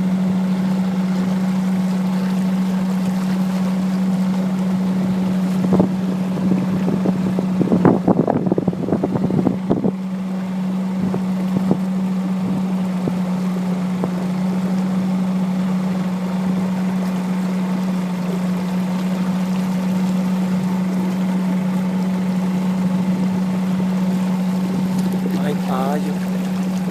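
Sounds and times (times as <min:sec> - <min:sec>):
motorboat engine drone: 0:00.0 - 0:26.9
water noise: 0:00.0 - 0:26.9
wind: 0:00.0 - 0:26.9.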